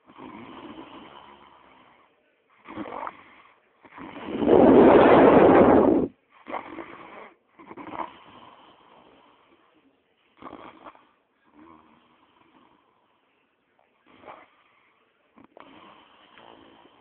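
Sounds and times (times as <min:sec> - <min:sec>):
quiet breaths: 0:00.0 - 0:04.9, 0:06.0 - 0:17.0
man snoring: 0:00.1 - 0:01.7, 0:15.5 - 0:17.0.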